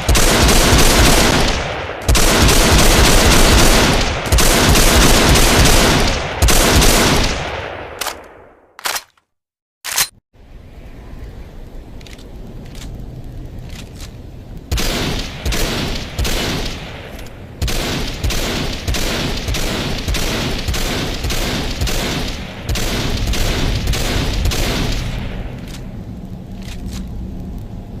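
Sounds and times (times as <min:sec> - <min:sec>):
steady low rumble: 0:00.0 - 0:08.3, 0:10.4 - 0:28.0
rifle shots: 0:00.0 - 0:09.0, 0:14.7 - 0:25.9.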